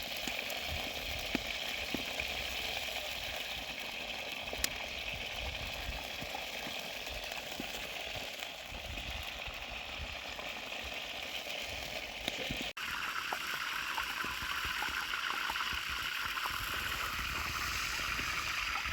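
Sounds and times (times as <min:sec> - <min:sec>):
food sizzling in hot oil: 0:00.0 - 0:18.9
hissy rush: 0:16.7 - 0:18.9.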